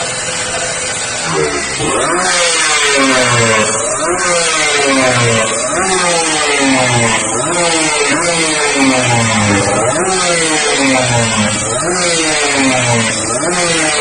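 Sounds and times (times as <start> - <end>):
motorcycle engine revving: 0.7 - 14.0.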